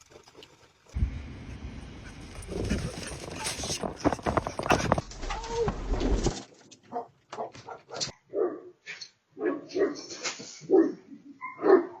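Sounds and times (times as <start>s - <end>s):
dogs barking: 6.9s - 8.8s, 9.4s - 12.0s.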